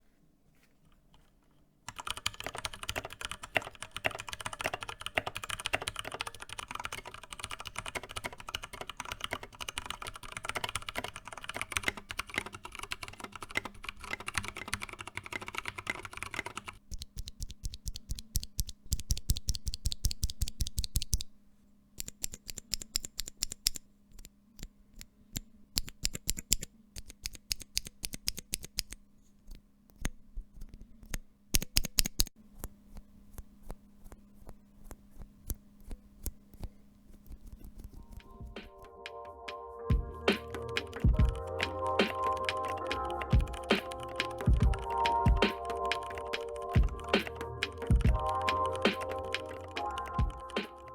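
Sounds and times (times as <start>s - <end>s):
typing on mechanical keyboard: 1.9s - 21.2s, 40.2s - 50.9s.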